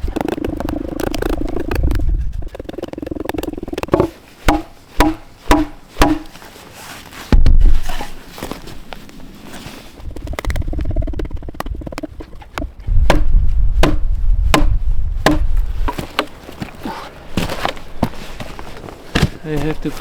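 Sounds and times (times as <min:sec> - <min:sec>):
wooden knocks: 0:03.8 - 0:06.3.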